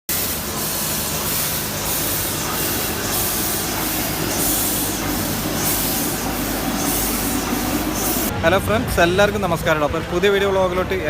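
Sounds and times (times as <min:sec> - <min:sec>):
steam hissing: 0:00.1 - 0:08.3
low mechanical hum: 0:00.1 - 0:11.0.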